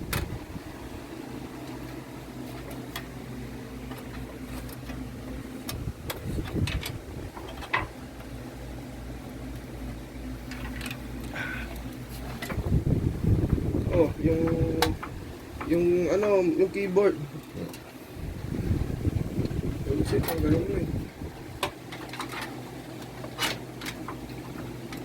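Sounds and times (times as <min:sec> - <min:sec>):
fan hum: 0:00.0 - 0:25.0.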